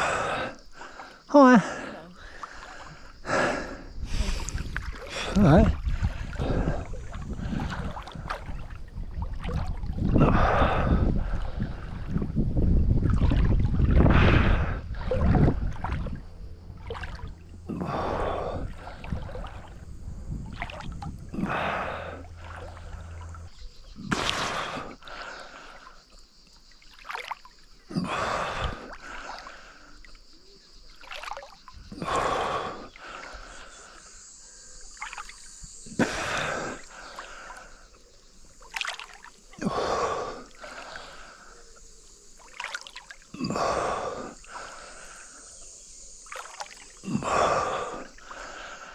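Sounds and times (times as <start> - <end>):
wind rumble on microphone: 3.8 - 24.2
water splashing from swimming strokes: 4.1 - 26.0, 26.6 - 30.1, 30.9 - 34.0, 34.8 - 37.9, 38.5 - 41.5, 42.3 - 45.4, 46.2 - 48.9.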